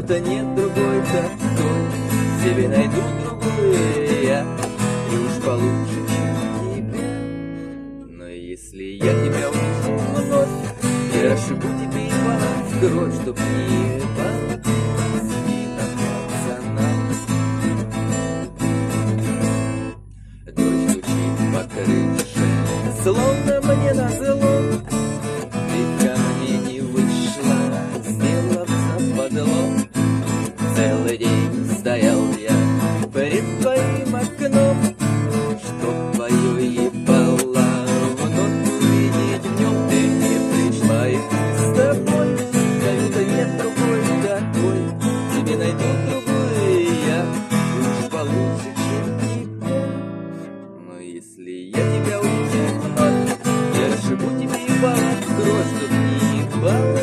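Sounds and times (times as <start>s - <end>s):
acoustic guitar playing: 0.0s - 57.0s.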